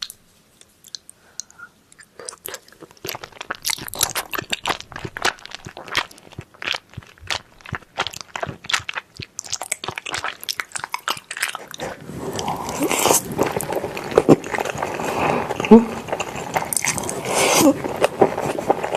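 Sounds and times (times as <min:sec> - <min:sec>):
crunchy food being chewed: 0:00.0 - 0:18.9.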